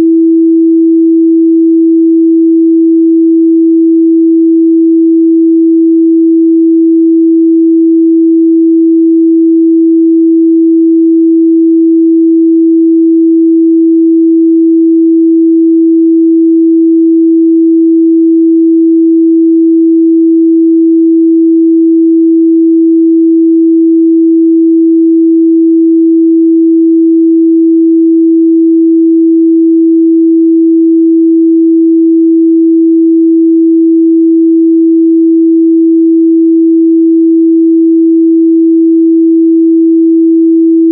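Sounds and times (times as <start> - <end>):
sine-wave test tone: 0.0 - 40.9.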